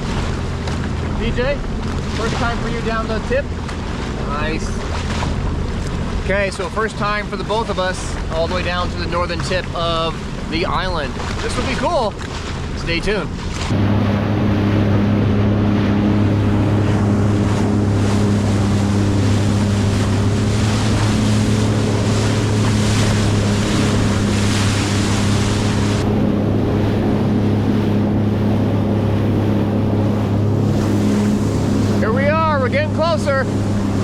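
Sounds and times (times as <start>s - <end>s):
watercraft engine running: 0.0s - 34.0s
wind on microphone: 13.6s - 32.2s
water hissing under hull: 15.6s - 26.0s.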